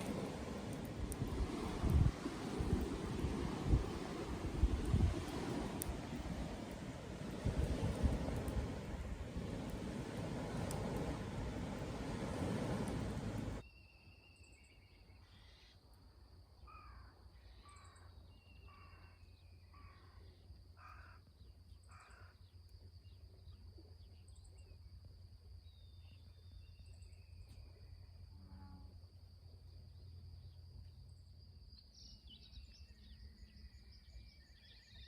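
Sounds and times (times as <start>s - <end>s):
low hum: 0.0s - 13.6s.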